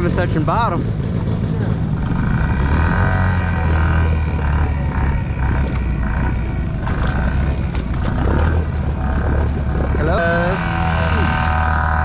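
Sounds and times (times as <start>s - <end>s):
atv engine running: 0.0s - 12.0s
vehicle wading through muddy water: 0.0s - 12.0s.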